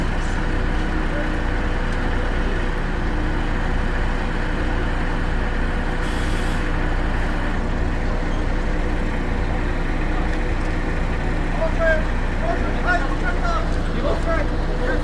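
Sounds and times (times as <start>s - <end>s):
large vehicle engine humming: 0.0s - 15.0s
air hiss: 6.0s - 6.8s.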